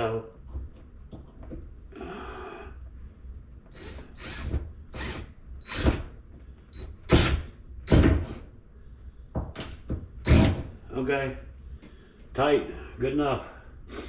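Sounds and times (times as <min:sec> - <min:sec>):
drill whine: 0:03.7 - 0:06.1, 0:10.2 - 0:10.6.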